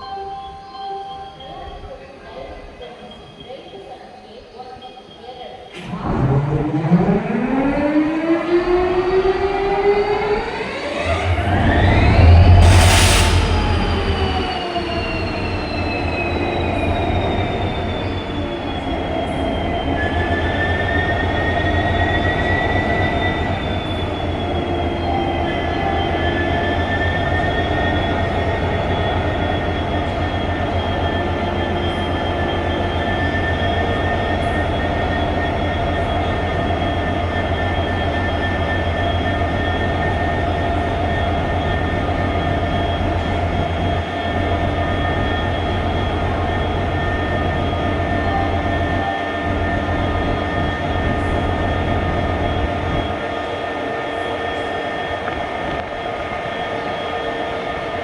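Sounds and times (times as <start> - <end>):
engine high whines: 5.8 - 58.0.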